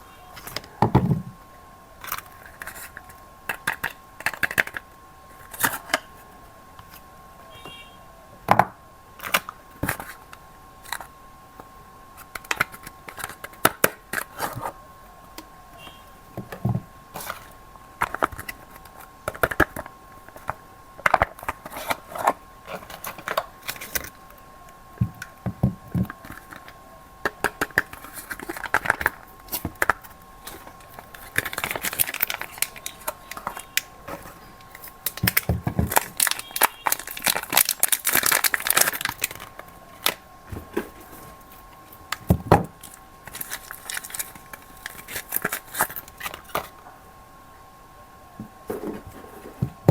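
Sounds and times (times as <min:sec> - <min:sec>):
wrappers crinkling and tearing: 0:27.8 - 0:40.2, 0:42.8 - 0:46.7.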